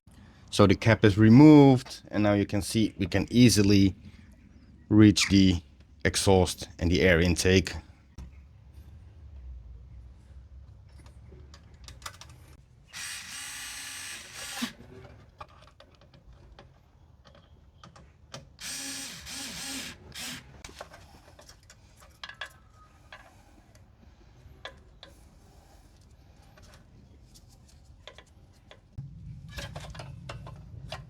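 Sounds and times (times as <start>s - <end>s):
clicks and parts handling: 10.7s - 12.6s, 20.6s - 23.9s
cordless screwdriver running: 13.0s - 14.8s, 18.6s - 20.6s.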